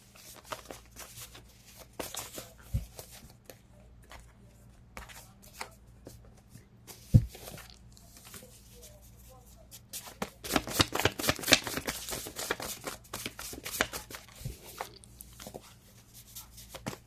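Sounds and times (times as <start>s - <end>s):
cards being shuffled: 0.1s - 4.3s, 9.9s - 17.0s.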